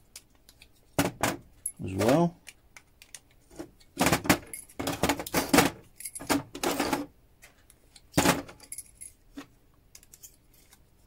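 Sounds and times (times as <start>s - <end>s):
metal parts clicking and clattering: 3.0s - 7.1s, 7.9s - 10.8s.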